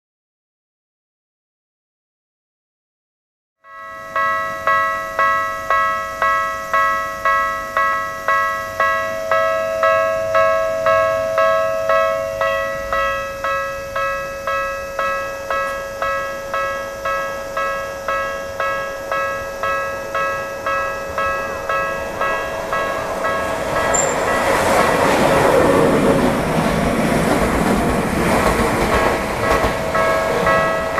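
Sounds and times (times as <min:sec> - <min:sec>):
level crossing warning bell: 0:03.6 - 0:25.6, 0:28.4 - 0:30.9.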